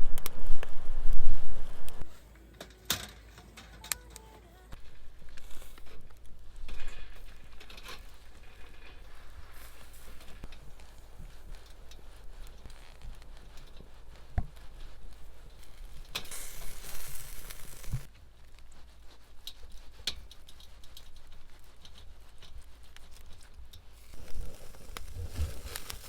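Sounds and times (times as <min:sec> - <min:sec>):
crinkling and rustling: 0:02.0 - 0:26.0.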